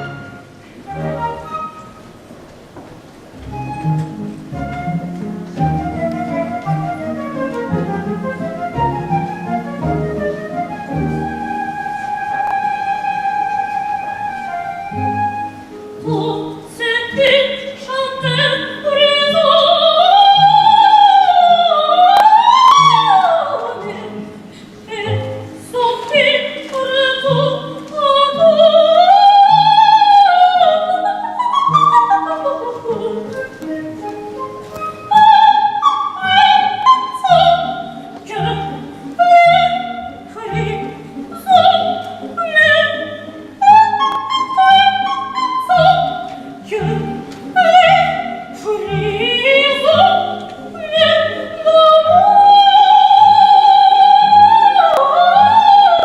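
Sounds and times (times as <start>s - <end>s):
person singing operetta with vibrato: 35.1s - 56.0s.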